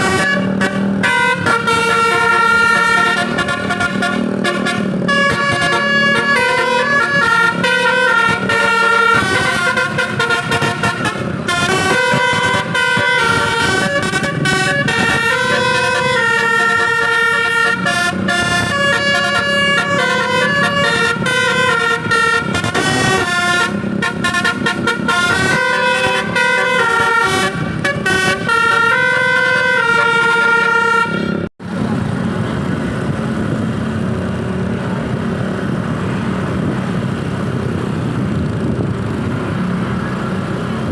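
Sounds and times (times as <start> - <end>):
musical bus horn melody: 0.0 - 31.5
road and engine noise: 0.0 - 40.9.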